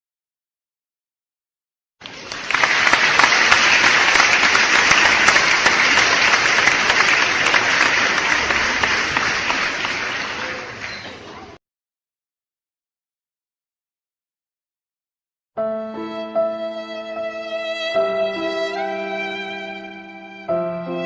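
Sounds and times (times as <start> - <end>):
crowd clapping: 2.0 - 11.6.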